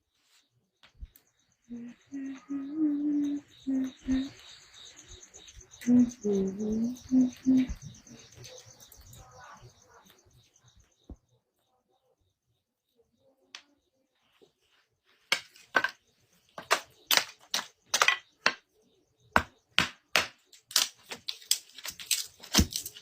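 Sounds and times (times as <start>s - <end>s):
wood chopping strikes: 19.4s - 20.9s.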